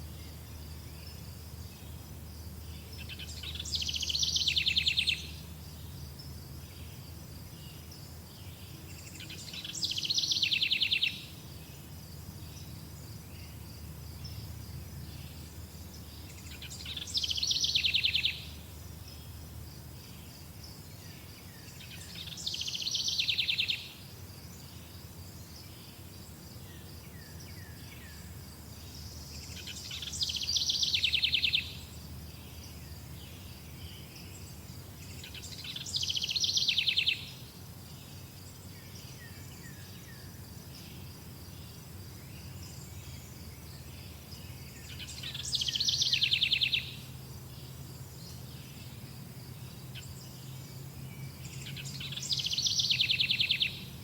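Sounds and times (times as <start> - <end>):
songbird song with fast trill: 0.0 - 54.0.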